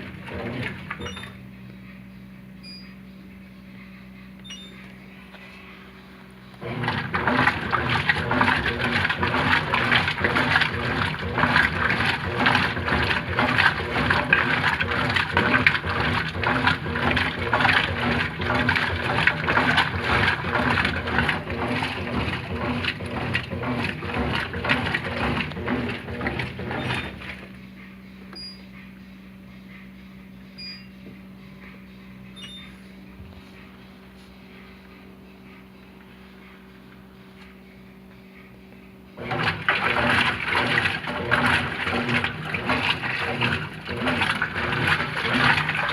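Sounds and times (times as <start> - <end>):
washing machine water sloshing: 0.0 - 1.5, 6.6 - 27.7, 39.2 - 45.9
steady low hum: 0.0 - 45.9.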